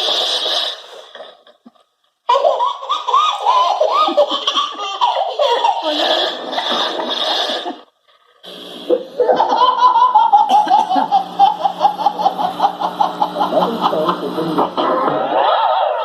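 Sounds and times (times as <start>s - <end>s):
baby laughing: 2.3s - 7.8s, 8.9s - 16.0s.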